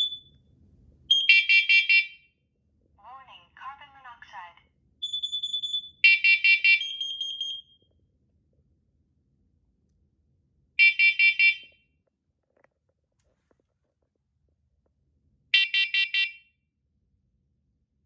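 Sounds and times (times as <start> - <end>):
alarm beeping: 0.0 - 0.3, 1.1 - 2.2, 5.0 - 7.8
loud alarm beeps: 0.0 - 0.3, 1.1 - 2.2, 5.0 - 7.8, 10.8 - 11.7.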